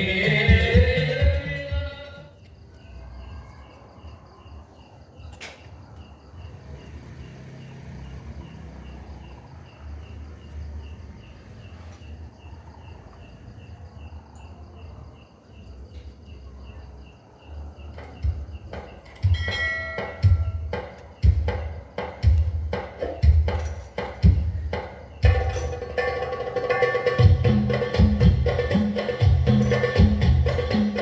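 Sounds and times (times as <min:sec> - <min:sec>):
cricket chirping: 0:00.0 - 0:31.0
loud drum thumps: 0:18.1 - 0:31.0.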